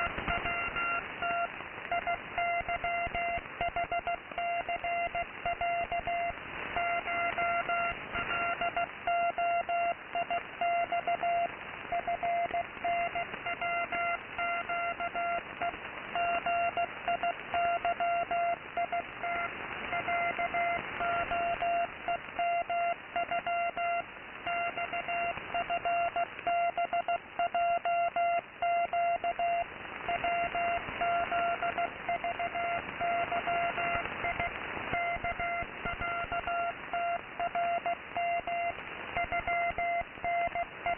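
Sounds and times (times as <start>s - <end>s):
static hiss: 0.0s - 40.9s
morse code beeping tone: 16.2s - 40.9s.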